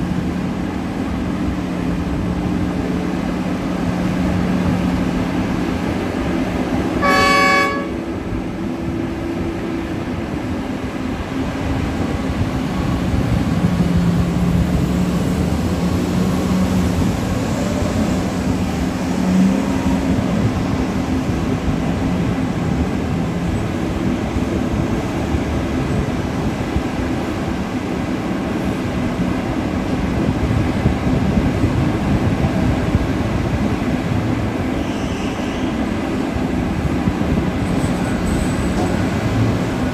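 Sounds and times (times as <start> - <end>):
large diesel engines running: 0.0 - 39.9
horn blast: 7.0 - 8.0.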